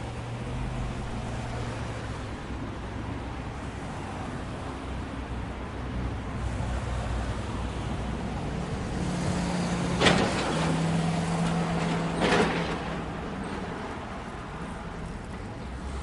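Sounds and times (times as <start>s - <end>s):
vehicle engines humming: 0.0s - 16.0s.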